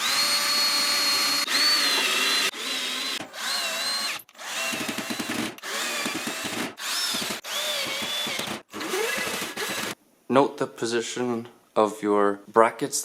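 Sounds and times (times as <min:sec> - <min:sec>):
cordless drill driving screws: 0:00.0 - 0:10.0.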